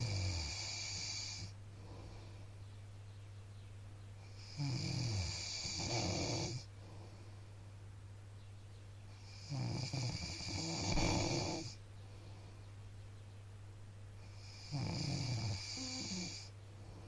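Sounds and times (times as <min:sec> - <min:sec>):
man snoring: 0:00.0 - 0:01.5, 0:04.4 - 0:06.7, 0:09.2 - 0:11.8, 0:14.3 - 0:16.5
quiet breathing: 0:00.0 - 0:03.2, 0:04.1 - 0:07.8, 0:09.1 - 0:13.0, 0:14.1 - 0:17.0.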